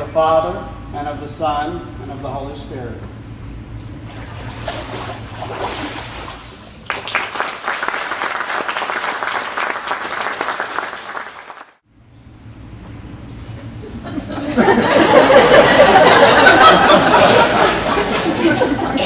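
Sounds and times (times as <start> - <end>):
crowd applauding: 6.8 - 11.8, 14.7 - 19.0.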